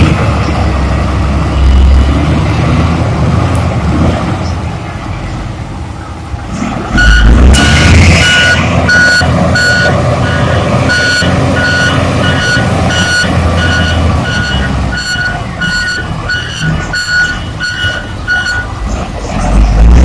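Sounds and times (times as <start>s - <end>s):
diesel engine under load: 0.0s - 20.0s
reversing alarm beeping: 7.0s - 18.8s.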